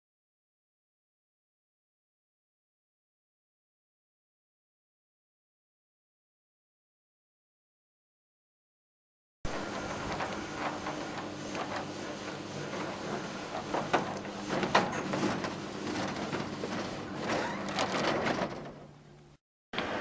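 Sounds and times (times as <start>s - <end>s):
garage door motor humming: 9.5s - 20.0s
door slats rattling and knocking: 12.8s - 19.0s.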